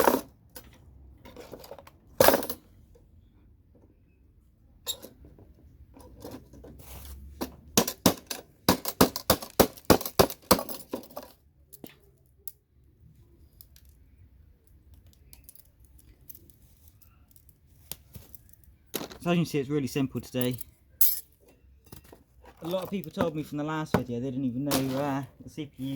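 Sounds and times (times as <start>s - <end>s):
tools knocking and clinking: 7.4s - 12.0s, 20.4s - 25.6s.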